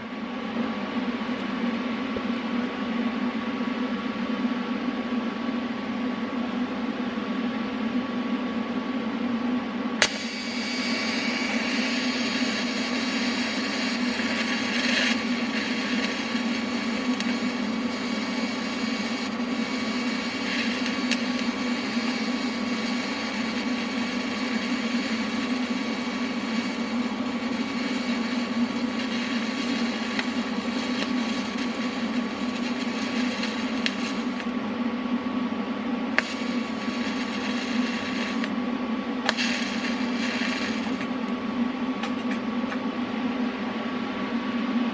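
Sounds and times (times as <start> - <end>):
welding arc hiss: 10.0 - 34.6, 36.1 - 38.6, 39.3 - 41.2
welder humming: 10.0 - 34.8, 36.1 - 41.4.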